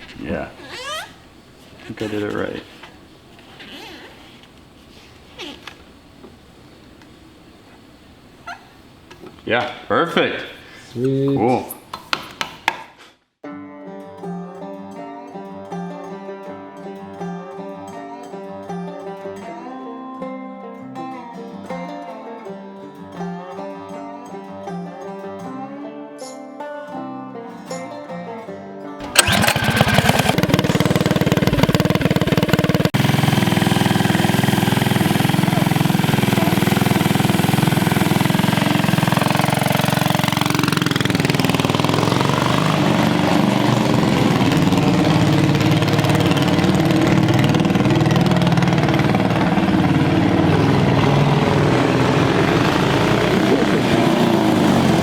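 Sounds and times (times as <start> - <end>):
mini bike engine running hard: 29.0 - 55.0.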